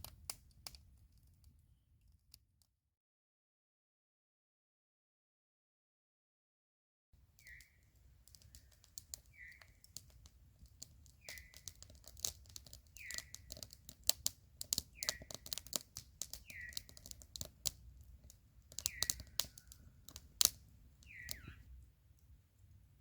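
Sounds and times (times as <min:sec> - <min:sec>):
campfire crackling and popping: 0:00.0 - 0:01.6, 0:07.3 - 0:22.8.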